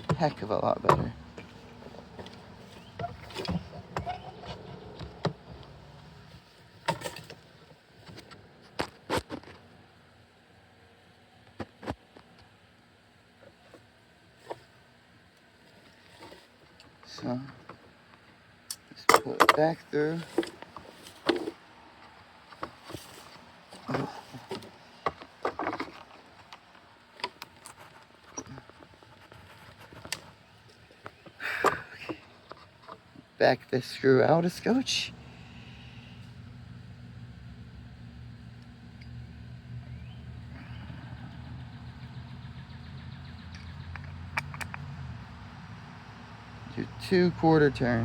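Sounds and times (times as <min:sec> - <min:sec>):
faint low hum: 0:00.0 - 0:48.0
sharp clicks and knocks: 0:43.4 - 0:45.0.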